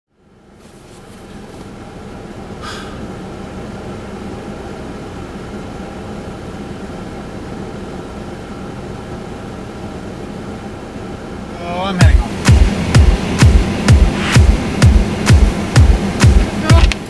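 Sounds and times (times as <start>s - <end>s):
car engine hum: 0.1s - 17.0s
road and tyre noise: 0.1s - 17.0s
brief hiss: 2.6s - 3.0s.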